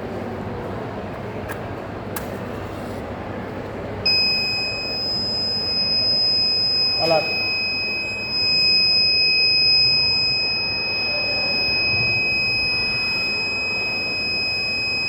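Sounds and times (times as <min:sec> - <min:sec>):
steady background hum: 0:00.0 - 0:15.0
piezo buzzer alarm tone: 0:04.1 - 0:15.0.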